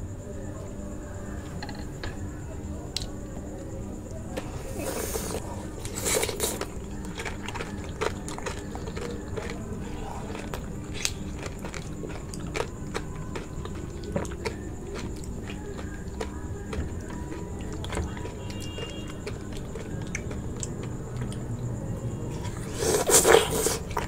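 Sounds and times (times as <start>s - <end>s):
biting and chewing: 5.0s - 21.7s.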